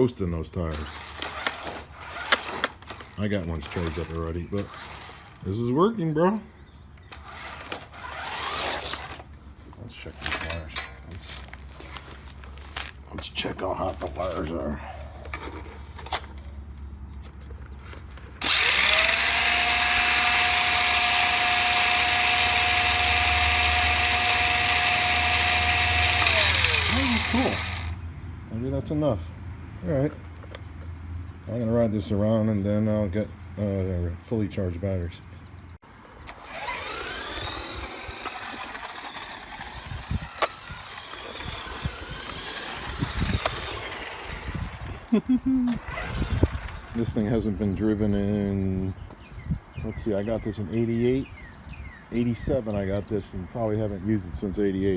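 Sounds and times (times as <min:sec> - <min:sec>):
electric motor whining: 0:00.7 - 0:05.8, 0:07.0 - 0:09.3, 0:18.4 - 0:28.0, 0:36.2 - 0:45.1, 0:45.7 - 0:47.2
sharp clicks: 0:36.1 - 0:44.1.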